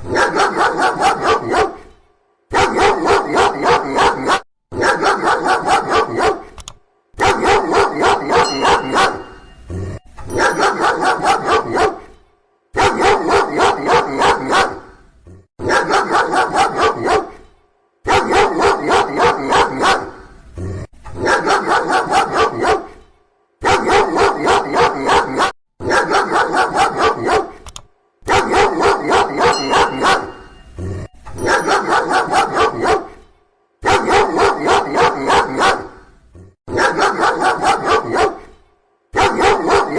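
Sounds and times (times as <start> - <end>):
dog barking loudly: 0.0 - 1.9, 2.5 - 6.6, 7.2 - 9.6, 10.4 - 12.2, 12.8 - 15.0, 15.6 - 17.4, 18.1 - 20.3, 21.2 - 23.0, 23.6 - 27.6, 28.2 - 30.6, 31.4 - 33.2, 33.8 - 36.1, 36.7 - 38.5, 39.2 - 39.9.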